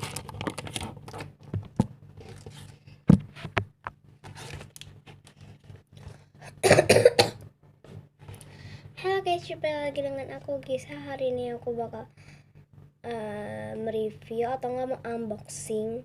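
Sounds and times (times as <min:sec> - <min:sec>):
handling knocks and scrapes: 0:00.0 - 0:06.2
low steady hum: 0:00.0 - 0:16.0.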